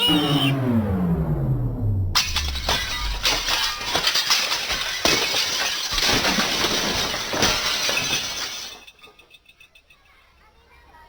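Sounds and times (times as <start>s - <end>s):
loud crash of breaking and clattering: 2.2s - 9.6s.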